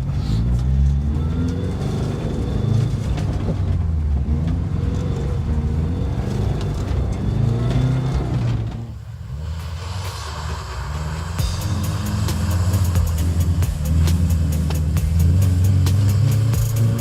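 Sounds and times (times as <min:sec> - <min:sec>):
car engine revving hard: 0:00.0 - 0:17.0.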